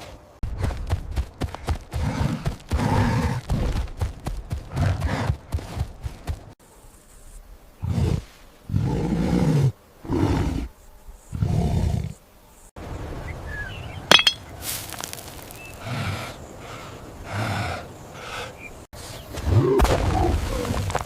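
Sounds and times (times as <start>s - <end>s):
sharp clink: 14.1s - 14.4s.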